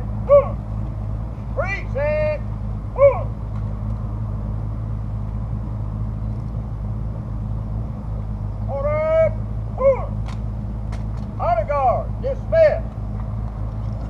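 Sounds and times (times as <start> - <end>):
long rising shouted call: 0.0 - 0.7, 1.6 - 3.4, 8.7 - 10.2
engine idling: 0.0 - 14.0.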